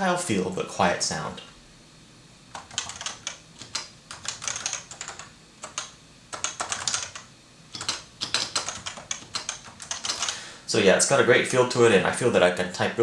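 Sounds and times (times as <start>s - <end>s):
soft muted keyboard typing: 2.5s - 10.4s.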